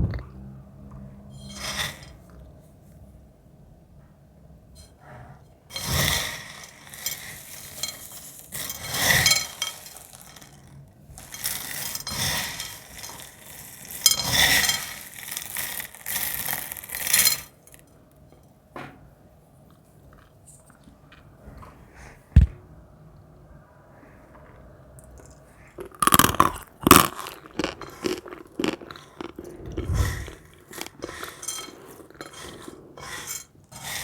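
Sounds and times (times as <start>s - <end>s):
dried film crackling and crumbling: 6.6s - 17.8s.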